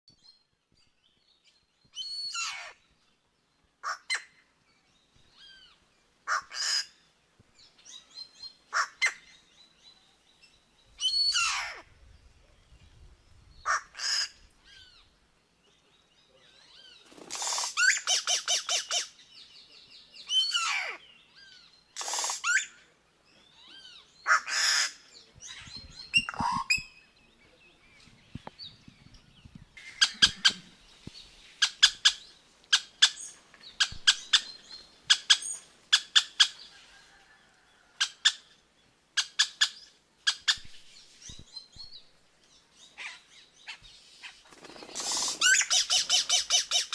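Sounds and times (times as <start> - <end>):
bird singing varied calls: 16.3 - 36.8, 42.8 - 46.9.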